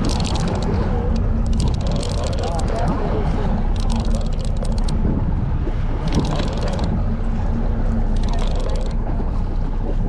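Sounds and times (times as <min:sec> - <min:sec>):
rapid clicking: 0:00.0 - 0:03.0, 0:03.7 - 0:05.0, 0:06.0 - 0:07.0, 0:08.1 - 0:09.1
boat engine humming: 0:00.0 - 0:10.0
wind noise on microphone: 0:00.0 - 0:10.0.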